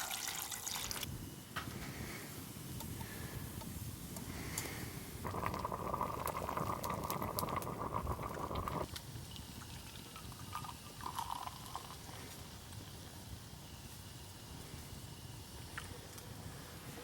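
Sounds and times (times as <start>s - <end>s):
liquid pouring gurgling: 0.0s - 1.1s, 5.2s - 12.1s.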